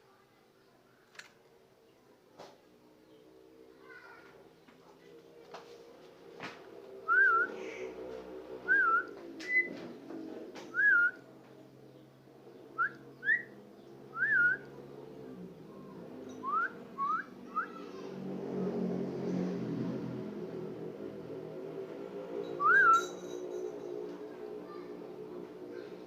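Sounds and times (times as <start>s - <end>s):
bird whistling: 7.1s - 7.6s, 8.7s - 9.7s, 10.7s - 11.2s, 12.8s - 14.6s, 16.4s - 17.8s, 22.6s - 23.1s.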